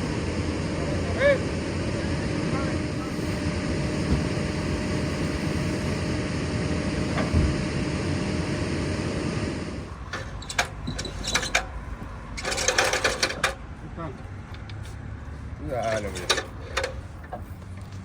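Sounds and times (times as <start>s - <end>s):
diesel engine running: 0.0s - 18.0s
sharp clicks and scraping knocks: 10.1s - 13.7s, 15.9s - 18.0s.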